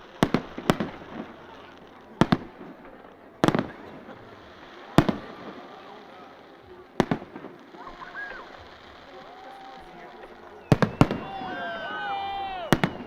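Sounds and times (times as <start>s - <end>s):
fireworks bangs: 0.0s - 13.0s
fireworks crackling: 0.0s - 13.0s
steady background hiss: 0.0s - 13.0s.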